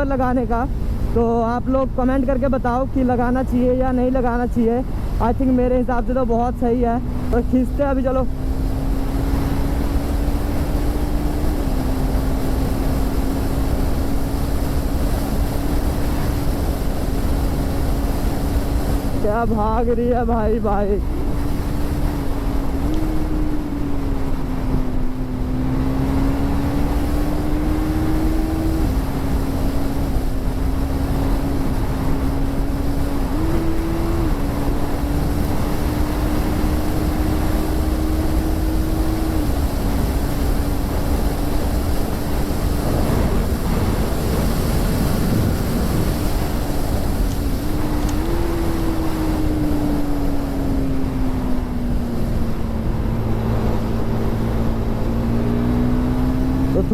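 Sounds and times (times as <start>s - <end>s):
motorcycle engine at speed: 0.0s - 56.9s
wind rush on microphone: 0.0s - 56.9s.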